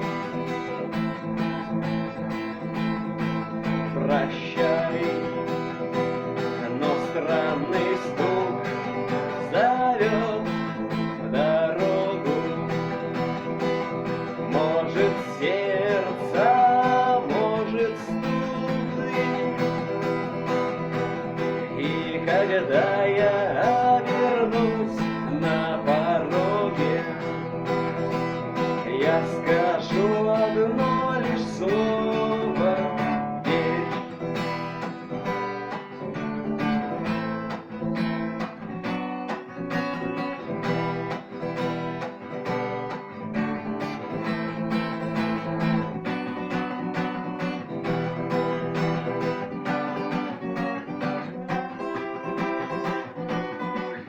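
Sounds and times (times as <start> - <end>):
acoustic guitar strumming: 0.0 - 54.0
wavering wordless melody: 6.5 - 27.6.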